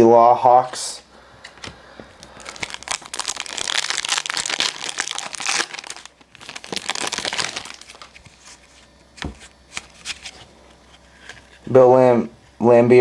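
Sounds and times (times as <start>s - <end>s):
plastic crinkling: 1.4s - 11.7s.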